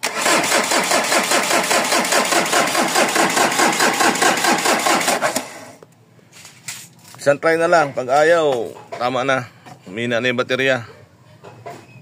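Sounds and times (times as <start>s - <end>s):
engine starter cranking: 0.0s - 5.7s.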